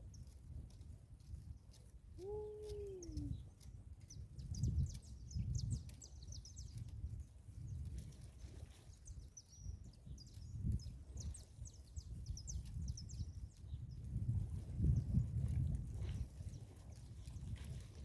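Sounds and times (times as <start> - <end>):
wind rumble on microphone: 0.0 - 18.0.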